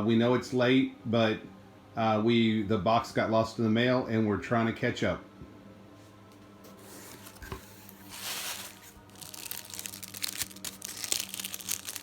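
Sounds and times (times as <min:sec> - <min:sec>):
wrapping crinkling: 0:06.7 - 0:12.0.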